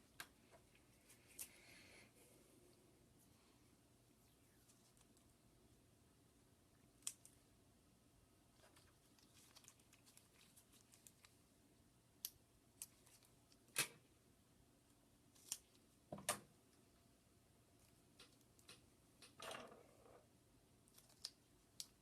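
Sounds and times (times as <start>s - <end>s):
small sharp clicks and snips: 7.0s - 7.4s, 12.2s - 14.0s, 15.4s - 16.4s, 20.9s - 22.0s.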